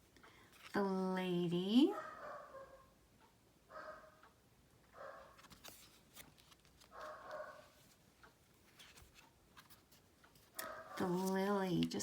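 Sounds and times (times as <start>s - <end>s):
distant dog barking: 1.9s - 3.0s, 3.7s - 4.2s, 4.9s - 5.4s, 6.9s - 7.8s, 10.6s - 11.1s.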